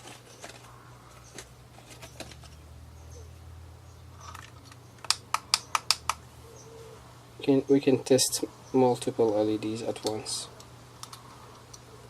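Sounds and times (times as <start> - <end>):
sharp clicks: 4.3 - 6.2, 10.0 - 11.9
plastic tester clicks and taps: 5.0 - 6.2.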